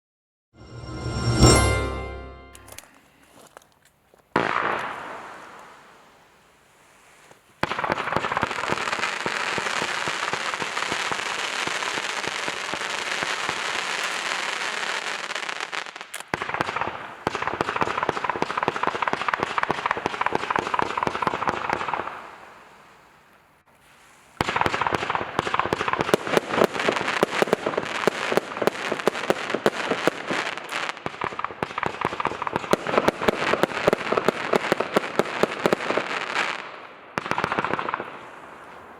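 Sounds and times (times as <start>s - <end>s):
fireworks shots and bangs: 24.4s - 30.2s.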